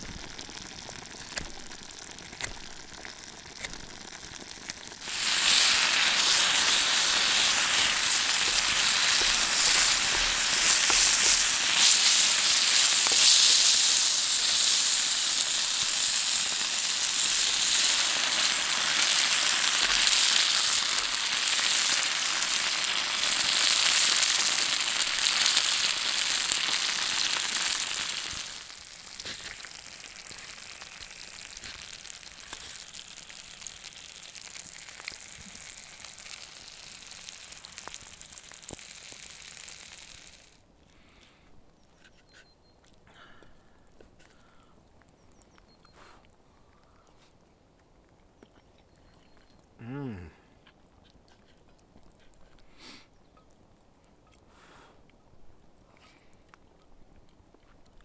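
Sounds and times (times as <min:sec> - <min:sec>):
food sizzling in a pan: 0:00.0 - 0:40.6.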